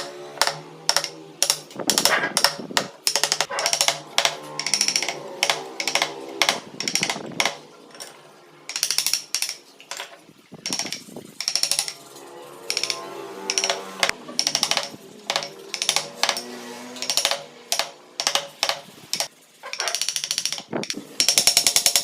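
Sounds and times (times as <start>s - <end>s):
chisel cutting into wood: 0.0s - 7.6s, 12.7s - 19.9s.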